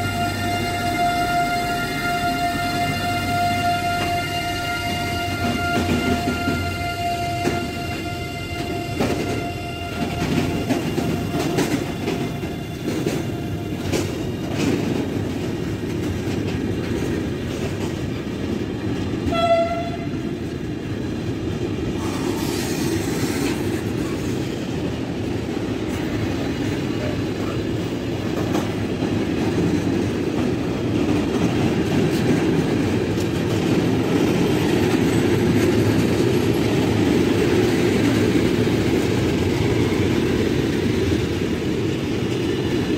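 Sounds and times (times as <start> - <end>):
train horn blast: 0.0 - 14.5, 19.3 - 20.3
train wheels rumbling on rails: 0.0 - 42.9.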